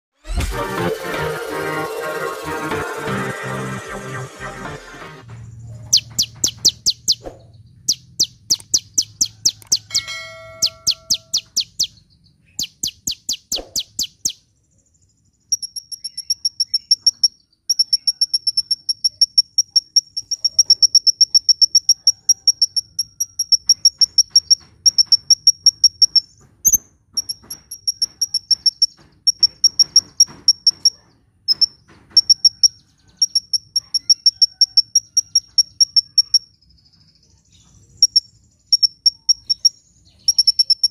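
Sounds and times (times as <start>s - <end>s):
sunbird singing: 5.5s - 22.4s, 32.6s - 40.9s.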